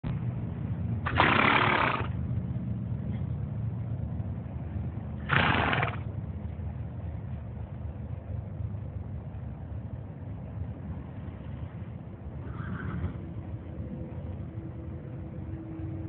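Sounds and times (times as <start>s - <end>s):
steady low hum: 0.0s - 16.0s
horse breathing out heavily: 1.1s - 2.1s, 5.3s - 6.0s.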